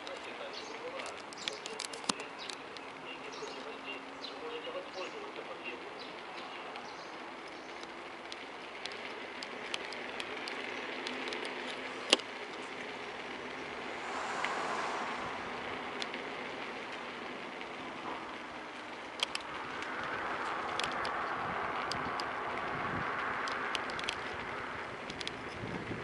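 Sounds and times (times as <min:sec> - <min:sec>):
light clicks and rattles: 0:00.0 - 0:03.8, 0:06.0 - 0:13.6, 0:16.9 - 0:25.7
road and wind noise: 0:00.0 - 0:26.0.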